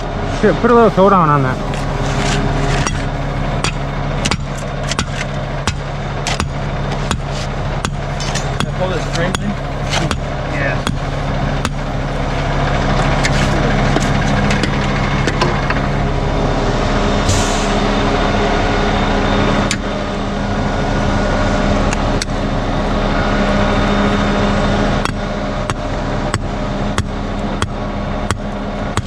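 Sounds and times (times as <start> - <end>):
concrete truck engine running: 0.0 - 29.0
sharp knocks: 1.6 - 12.1
air hiss: 17.2 - 17.9.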